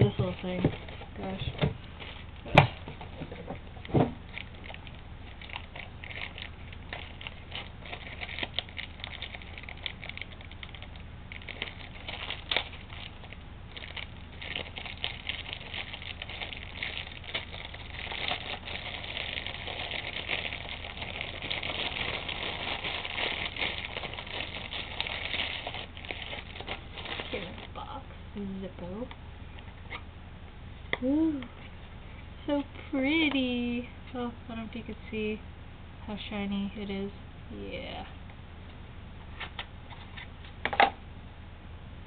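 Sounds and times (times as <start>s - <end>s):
packing material crinkling: 0.4s - 28.0s.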